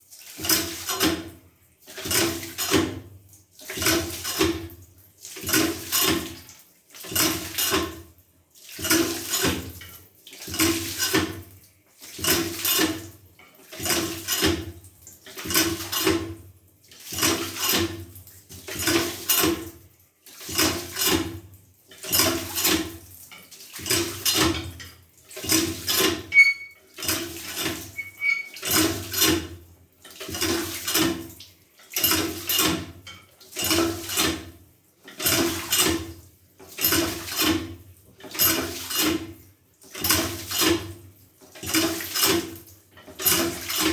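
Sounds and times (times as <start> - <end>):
hand pump clanking: 25.4 - 29.4.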